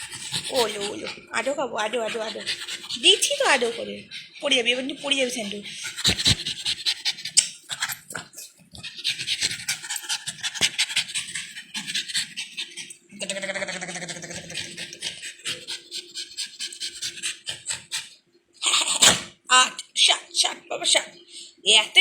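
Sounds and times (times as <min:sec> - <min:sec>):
dog panting rapidly: 0:00.0 - 0:13.1, 0:14.5 - 0:18.2.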